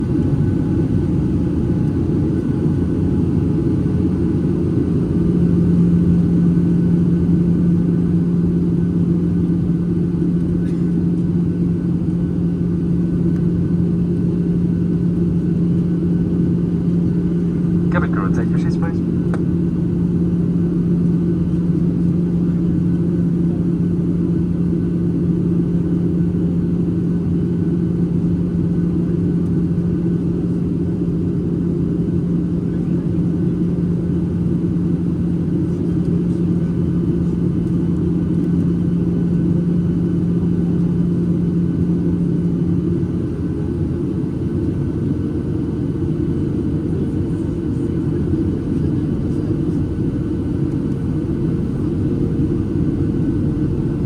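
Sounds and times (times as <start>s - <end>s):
airplane cabin roar: 0.0s - 54.0s
strong steady hum: 15.2s - 21.0s, 46.5s - 54.0s.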